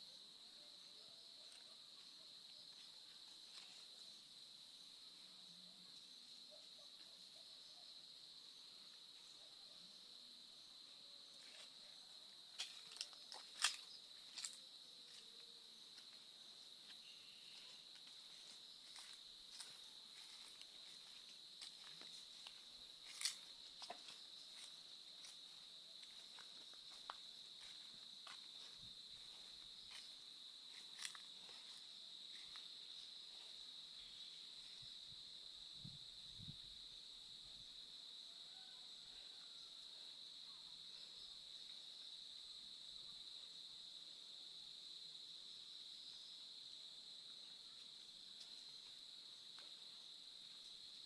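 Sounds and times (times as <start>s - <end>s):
insects droning: 0.0s - 51.0s
light ticks and rustles: 17.9s - 25.4s.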